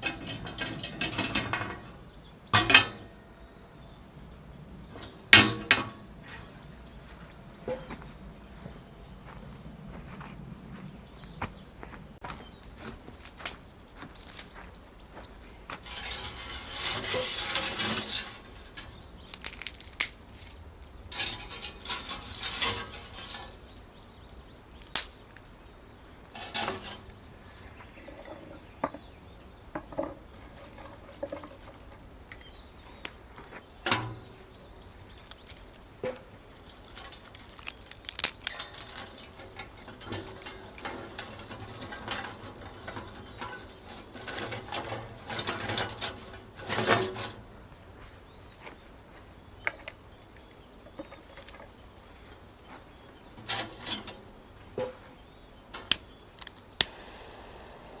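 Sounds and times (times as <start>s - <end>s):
rustling and scraping: 0.0s - 3.2s, 4.8s - 56.9s
utensils clinking against dishes: 26.4s - 27.2s.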